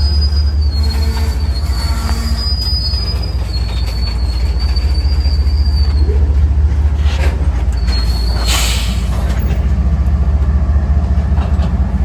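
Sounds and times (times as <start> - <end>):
steel wheels squealing on rail: 0.0 - 9.6
train cars rumbling: 0.0 - 12.0.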